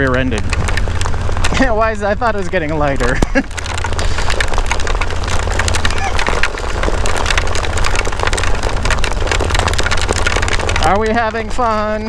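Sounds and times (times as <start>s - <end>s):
hail and rain pelting camera: 0.0s - 12.0s
wind buffeting: 0.0s - 12.0s.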